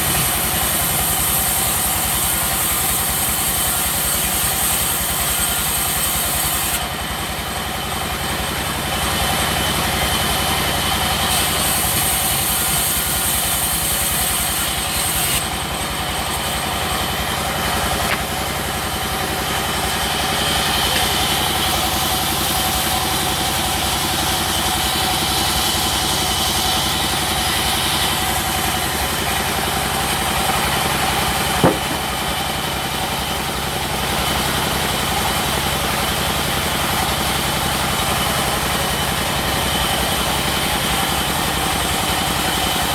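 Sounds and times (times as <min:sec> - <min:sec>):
sawmill machinery running: 0:00.0 - 0:42.9
sharp knock: 0:31.6 - 0:32.1.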